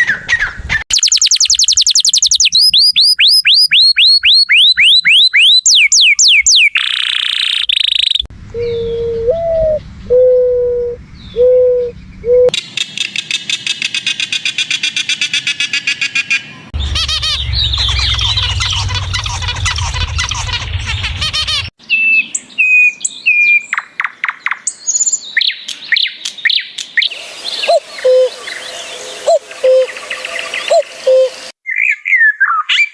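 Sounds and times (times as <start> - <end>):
low hooting: 16.8 - 21.7
whistled bird notes sliding down: 27.0 - 31.5.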